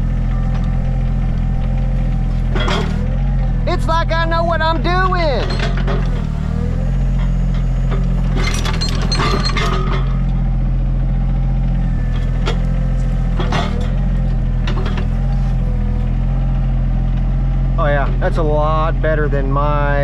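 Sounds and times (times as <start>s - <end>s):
excavator engine running: 0.0s - 20.0s
chains clinking and scraping: 8.3s - 10.2s.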